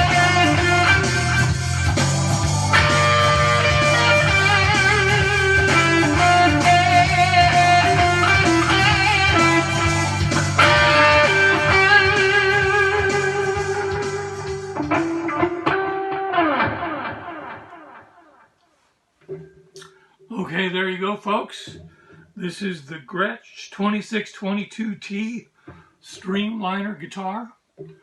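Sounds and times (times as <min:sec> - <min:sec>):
electric guitar playing: 0:00.0 - 0:18.5.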